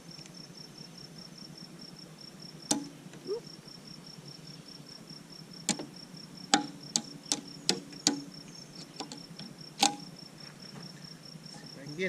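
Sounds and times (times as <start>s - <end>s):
hammer striking metal: 2.7s - 3.0s, 6.5s - 7.4s.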